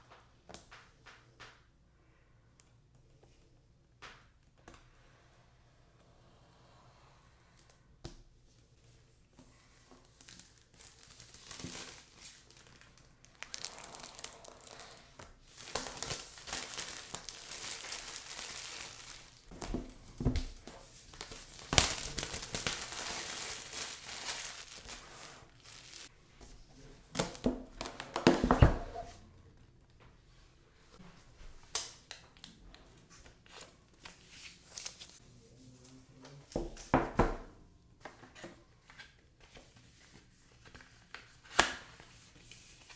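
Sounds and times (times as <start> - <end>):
packaging crinkling and tearing: 10.2 - 26.1.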